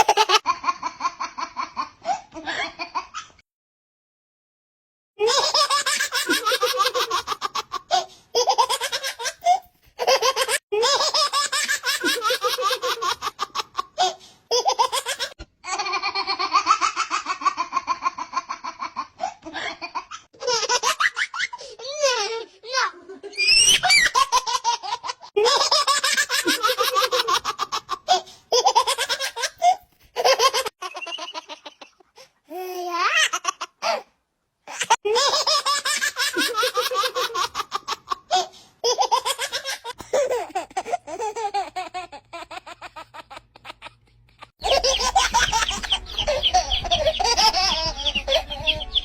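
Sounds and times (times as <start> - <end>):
baby laughing: 0.0 - 3.4, 5.2 - 34.1, 34.7 - 49.0
low hum: 44.6 - 49.0.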